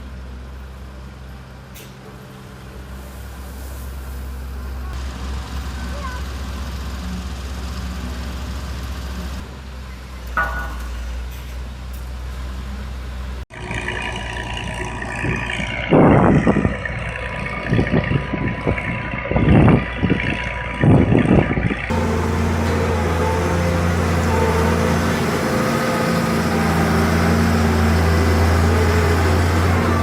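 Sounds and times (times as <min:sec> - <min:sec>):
diesel engine humming: 0:11.7 - 0:30.0
rough engine surges: 0:13.5 - 0:30.0.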